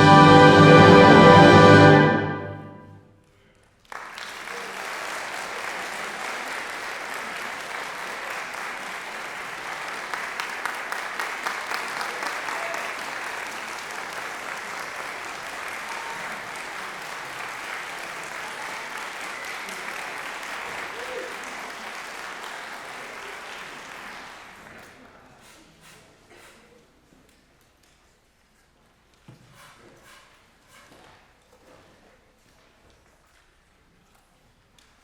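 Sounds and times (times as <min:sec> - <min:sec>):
audience applause: 0:00.0 - 0:02.7, 0:03.8 - 0:25.3
concert band chord: 0:00.0 - 0:03.0.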